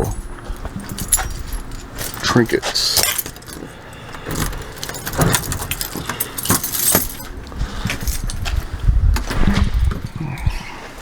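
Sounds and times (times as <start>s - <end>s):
keys jangling: 0.0s - 8.7s.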